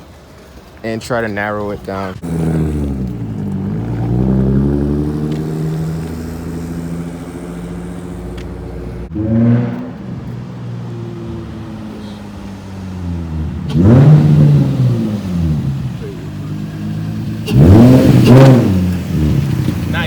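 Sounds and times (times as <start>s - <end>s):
car engine revving: 1.2s - 20.0s.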